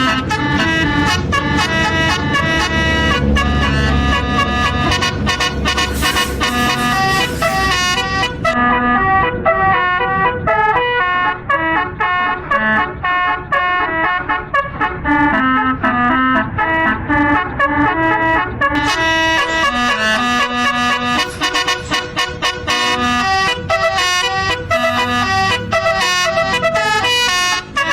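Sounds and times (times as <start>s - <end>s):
bus horn playing melody: 0.0s - 27.9s.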